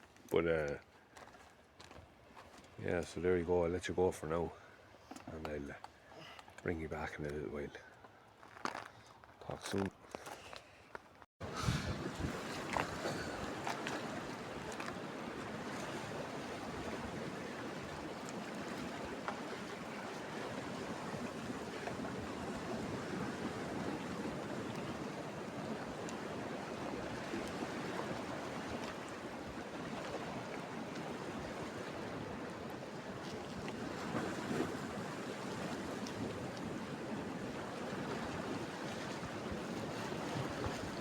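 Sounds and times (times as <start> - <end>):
wind: 0.0 - 41.0
sea surf washing on shore: 11.4 - 41.0.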